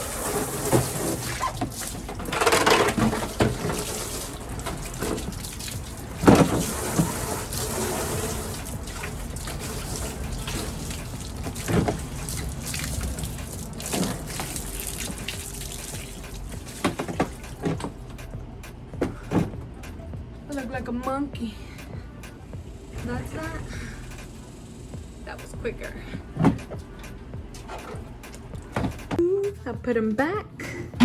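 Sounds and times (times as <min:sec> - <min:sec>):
running water splashing: 0:00.0 - 0:02.3, 0:02.9 - 0:17.8.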